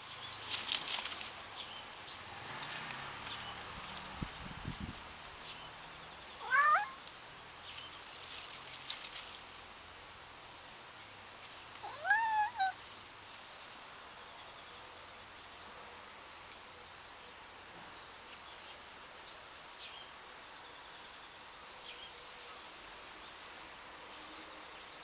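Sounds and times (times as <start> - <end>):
outdoor background hiss: 0.0 - 25.0
cat meowing: 6.4 - 7.0, 11.8 - 12.8.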